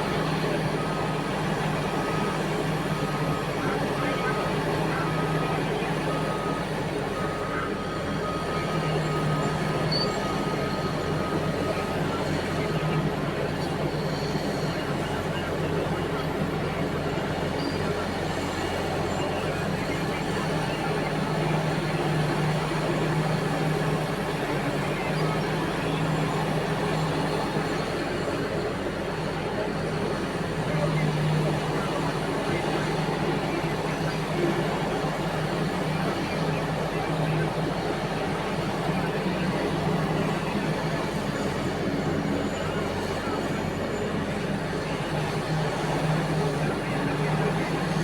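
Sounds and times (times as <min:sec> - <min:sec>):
backup alarm beeps: 0:00.0 - 0:13.2
diesel engine drone: 0:00.0 - 0:48.0.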